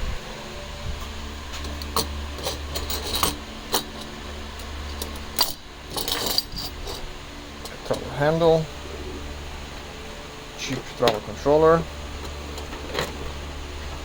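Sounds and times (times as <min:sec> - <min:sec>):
steady low hum: 0:00.0 - 0:14.0
small parts clicking and clinking: 0:01.5 - 0:08.2, 0:12.2 - 0:13.4.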